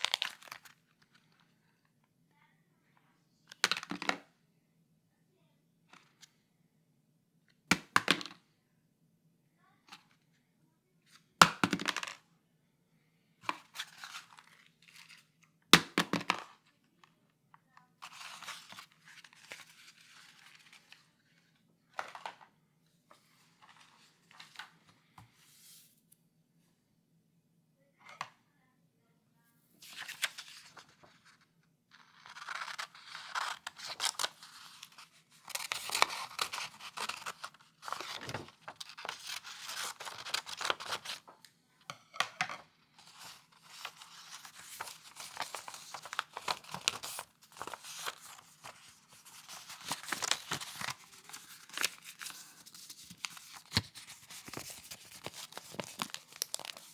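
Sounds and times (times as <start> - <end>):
paper rustling: 32.2 - 41.4, 43.0 - 56.9
paper tearing and crumpling: 44.0 - 56.9
paper snapping: 49.4 - 56.9.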